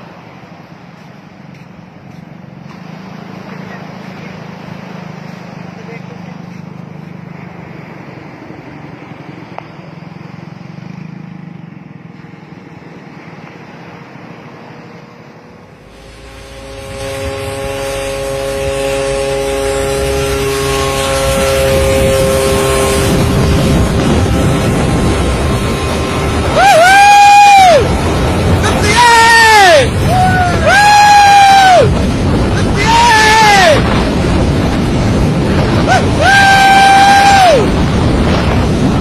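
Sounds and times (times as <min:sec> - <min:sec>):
loud rushing noise: 0:14.2 - 0:39.0.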